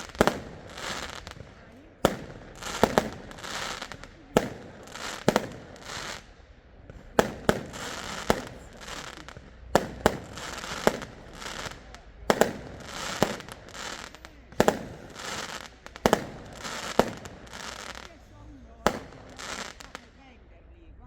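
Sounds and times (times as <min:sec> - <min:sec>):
fireworks bangs with crackling: 0:00.0 - 0:20.3.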